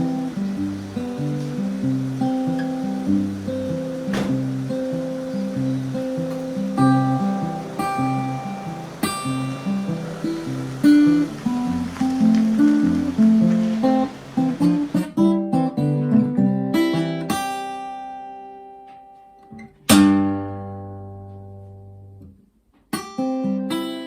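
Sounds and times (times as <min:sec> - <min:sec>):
solo instrumental music: 0:00.0 - 0:15.1.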